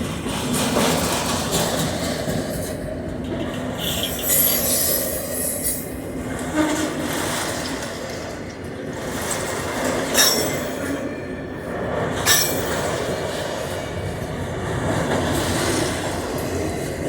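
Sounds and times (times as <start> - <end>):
rumble of train wheels on rail: 0.0 - 17.0
high wheel squeal: 3.8 - 7.0.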